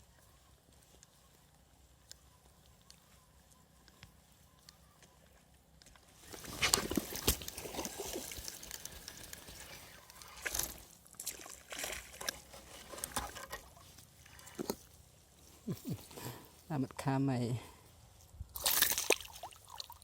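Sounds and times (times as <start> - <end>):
water splashing and sloshing: 6.3 - 14.7, 18.6 - 20.0.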